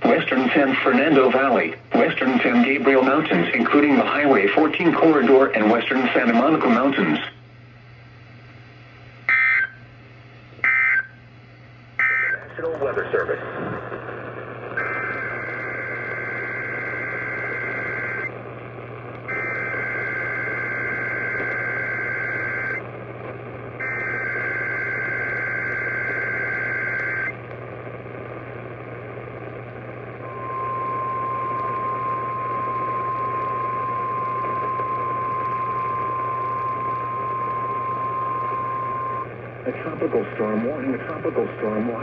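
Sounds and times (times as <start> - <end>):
radio hiss: 0.0 - 7.5, 12.0 - 42.0
low hum: 0.0 - 42.0
digital data tone bursts: 2.0 - 7.0, 30.3 - 39.3
steady warning alarm tone: 2.0 - 7.0, 9.3 - 9.8, 10.6 - 11.2, 12.0 - 12.4, 14.8 - 18.3, 19.3 - 22.8, 23.8 - 27.3, 30.2 - 39.3.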